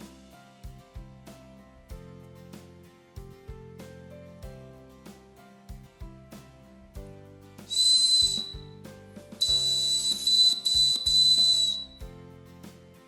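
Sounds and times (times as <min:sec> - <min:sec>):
shrill whistle blasts: 0:07.7 - 0:08.7, 0:09.4 - 0:12.0.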